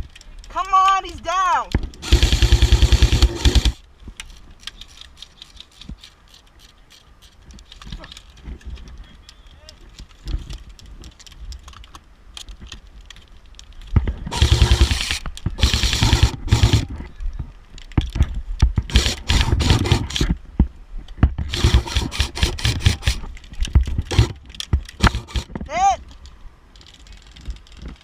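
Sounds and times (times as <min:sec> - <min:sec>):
airsoft guns firing bursts: 0:02.0 - 0:03.8, 0:14.3 - 0:17.0, 0:18.9 - 0:20.3, 0:21.5 - 0:23.3, 0:24.1 - 0:24.4, 0:25.0 - 0:25.6.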